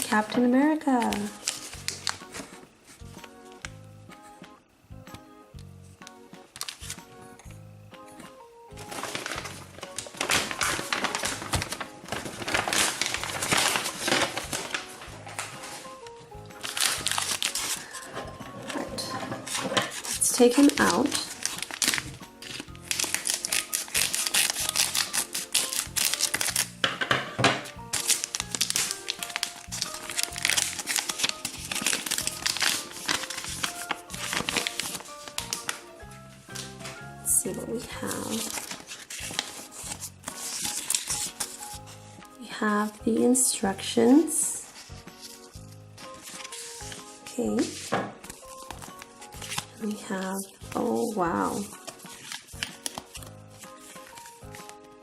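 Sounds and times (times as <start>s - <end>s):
quiet background music: 0.0s - 55.0s
packaging crinkling and tearing: 1.0s - 2.6s, 6.5s - 7.0s, 8.8s - 26.9s, 27.6s - 35.9s, 38.0s - 41.9s, 44.7s - 50.9s, 51.5s - 55.0s.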